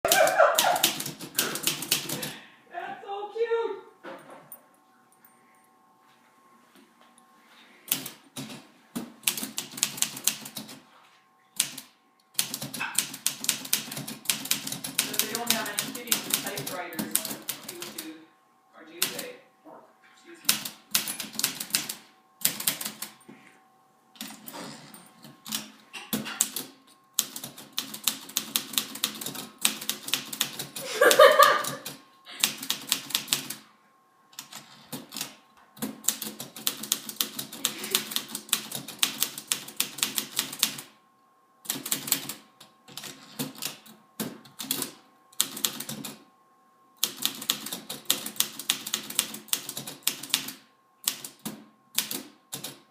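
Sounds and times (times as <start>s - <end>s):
typewriter keys clattering: 0.0s - 2.4s, 9.2s - 10.8s, 11.6s - 18.1s, 20.5s - 23.2s, 25.2s - 33.6s, 34.4s - 40.9s, 41.7s - 46.2s, 47.0s - 52.9s.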